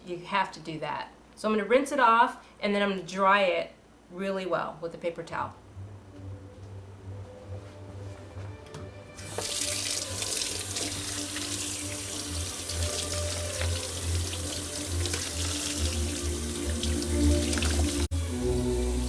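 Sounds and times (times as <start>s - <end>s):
water running from faucet: 9.2s - 19.0s.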